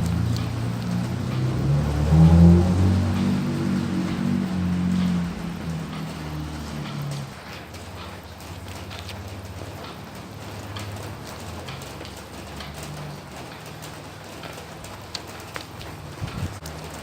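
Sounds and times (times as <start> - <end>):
raindrops ticking sharply: 0.0 - 17.0
steady rain falling: 0.0 - 17.0.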